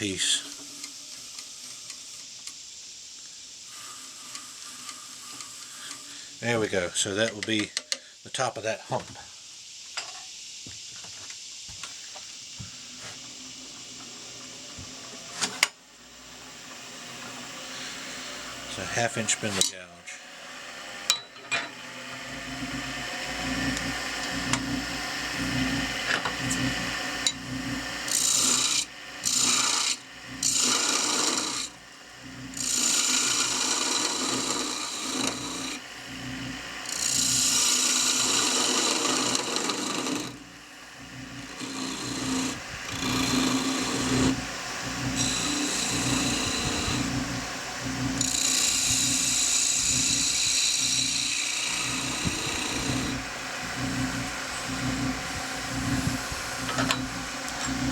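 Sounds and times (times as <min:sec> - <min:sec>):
gouge scraping spinning wood: 0:00.0 - 0:02.1, 0:03.6 - 0:07.6, 0:16.2 - 0:19.8, 0:21.7 - 0:57.9
lathe motor hum: 0:00.0 - 0:07.2, 0:12.4 - 0:57.9.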